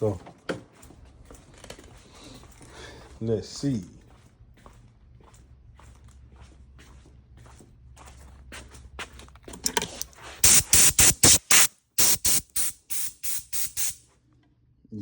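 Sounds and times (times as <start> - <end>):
compressed air blasts: 10.4 - 14.0.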